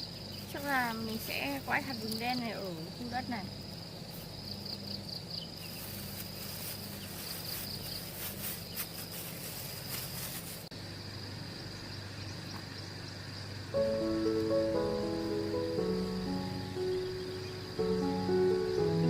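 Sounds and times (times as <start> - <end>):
crickets trilling: 0.0 - 19.0
rustles and scrapes: 5.6 - 10.7.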